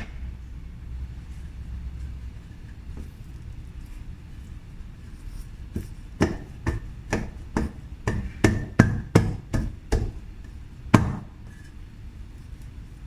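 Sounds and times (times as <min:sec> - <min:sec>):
sharp knocks: 0:00.0 - 0:00.3, 0:05.8 - 0:10.2.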